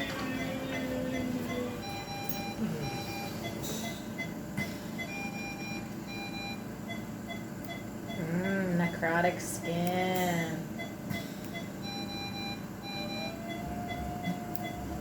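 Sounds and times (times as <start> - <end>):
medical monitor alarm beeping: 0.0 - 15.0.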